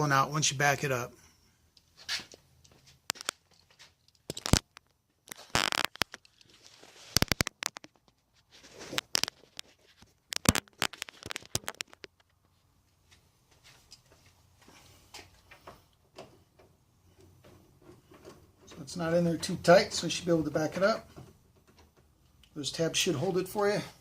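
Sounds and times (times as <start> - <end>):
metal tapping and rubbing: 7.1 - 12.4.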